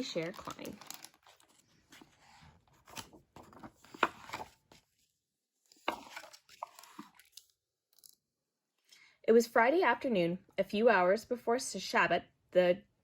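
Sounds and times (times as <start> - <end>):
paper pages rustling: 0.0 - 5.1, 5.7 - 7.5.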